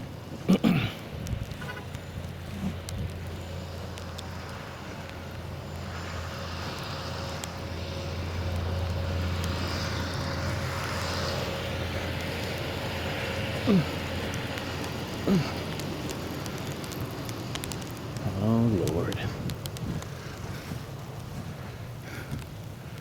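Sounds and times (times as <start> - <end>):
car passing by: 3.5 - 15.1.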